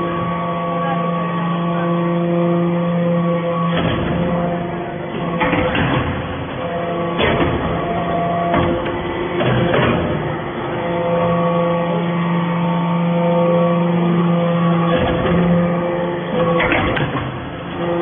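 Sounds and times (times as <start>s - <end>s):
machine hum: 0.0s - 18.0s
sharp machine clunks: 3.5s - 11.0s, 14.8s - 17.8s.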